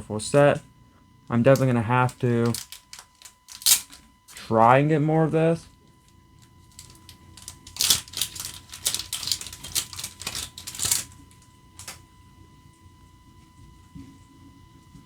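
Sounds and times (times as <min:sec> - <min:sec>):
foil wrapper crinkling and tearing: 0:01.6 - 0:04.0, 0:06.8 - 0:11.2.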